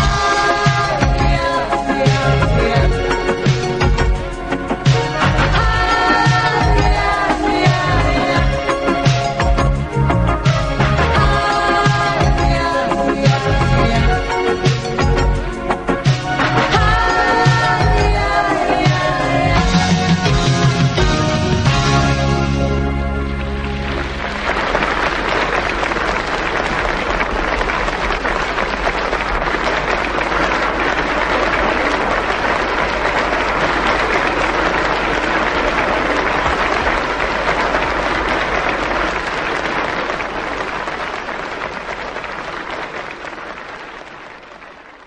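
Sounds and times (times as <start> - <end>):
music: 0.0 - 44.2
audience applauding: 14.6 - 45.0.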